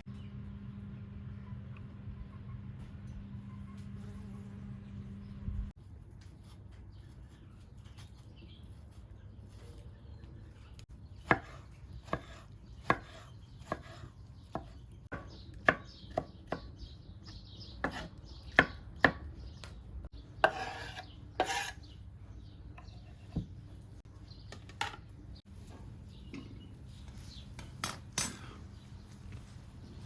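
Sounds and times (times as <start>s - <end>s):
knife chopping on cutting board: 11.2s - 16.7s, 17.8s - 19.2s, 20.4s - 21.8s
knife scraping board: 20.4s - 22.0s.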